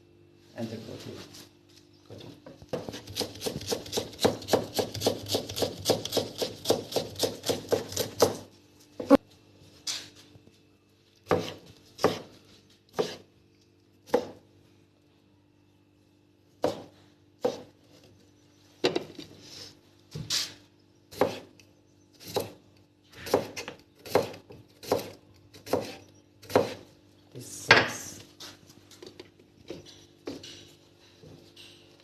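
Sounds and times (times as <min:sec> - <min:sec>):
knife chopping on cutting board: 0:02.7 - 0:09.2, 0:11.3 - 0:12.3, 0:12.9 - 0:13.3, 0:14.1 - 0:14.4, 0:16.6 - 0:17.7, 0:21.2 - 0:21.5, 0:23.3 - 0:26.8.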